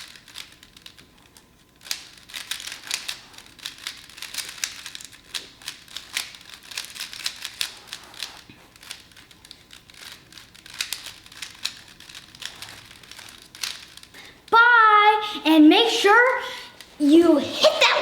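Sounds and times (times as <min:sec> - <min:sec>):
plastic puzzle cube clicking: 0:00.0 - 0:14.1.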